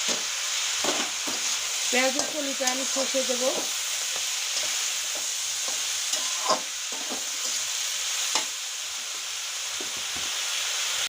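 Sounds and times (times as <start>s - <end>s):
vegetables sizzling in a pan: 0.0s - 11.0s
spatula scraping and clinking on pan: 0.8s - 7.7s.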